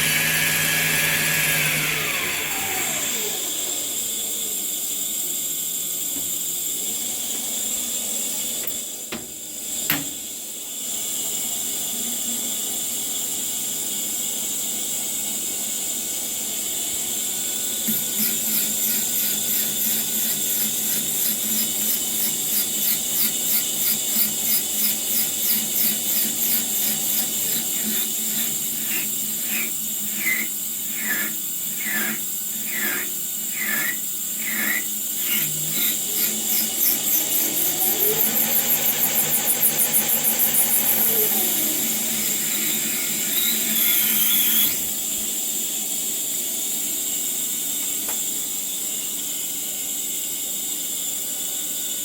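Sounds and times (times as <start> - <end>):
metal lathe whining: 0.0 - 4.2, 17.8 - 45.0
pulsing high squeal: 25.5 - 44.8.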